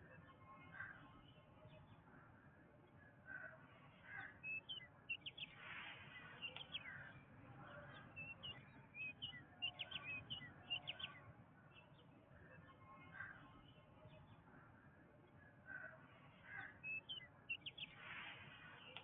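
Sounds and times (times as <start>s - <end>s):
birds chirping and calling: 4.0s - 7.1s, 7.7s - 11.2s, 16.4s - 19.0s.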